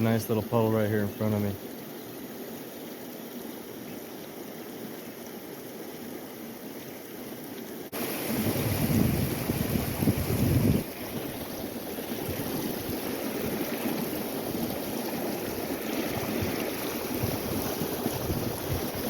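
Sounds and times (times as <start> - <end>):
river water rushing over rapid: 0.0 - 19.0
wind rumbling on microphone: 8.0 - 19.0.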